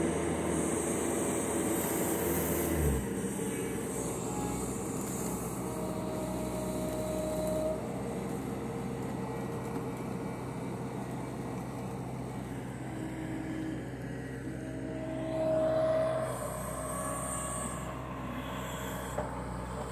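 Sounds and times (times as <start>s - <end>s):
engine whine: 0.0s - 19.9s
skid steer engine running: 0.0s - 19.9s.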